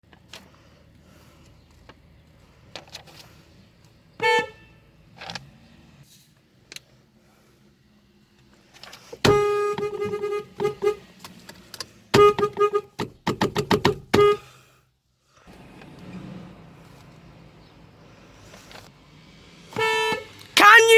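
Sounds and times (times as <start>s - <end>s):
car horn honking: 4.2s - 4.8s, 9.3s - 11.1s, 12.2s - 13.0s, 14.2s - 14.5s, 19.8s - 20.9s.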